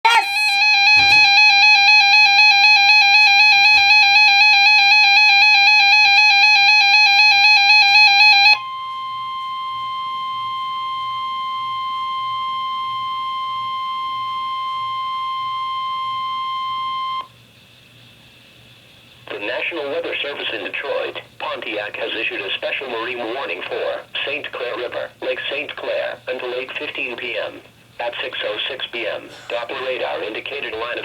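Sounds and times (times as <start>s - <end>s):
steady alarm tone from radio: 0.0s - 17.3s
warbling electronic alarm: 0.0s - 17.3s.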